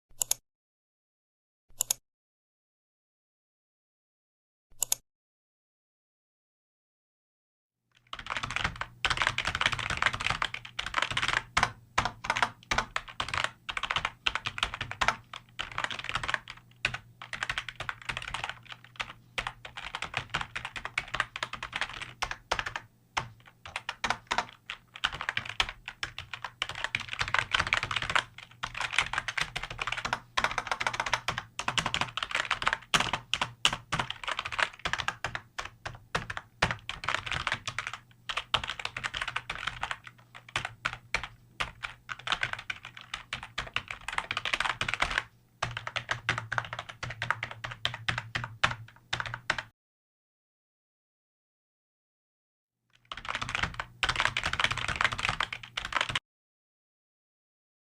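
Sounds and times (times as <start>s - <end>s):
fast typing on keyboard: 8.0s - 49.7s, 53.0s - 56.2s.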